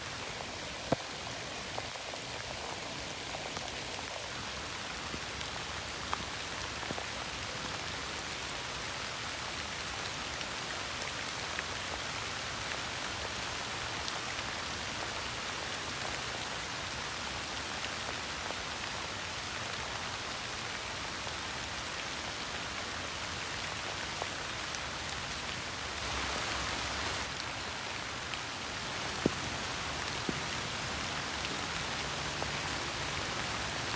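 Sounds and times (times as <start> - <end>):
rain on fallen leaves: 0.0 - 33.9
single raindrops landing close: 28.3 - 33.9.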